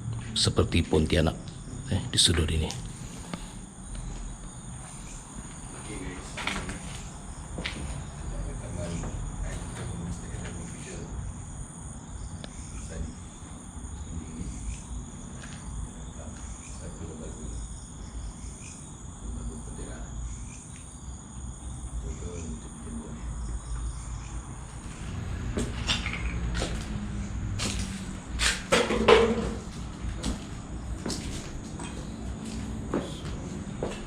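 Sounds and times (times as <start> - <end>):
crickets chirring: 0.0 - 34.0.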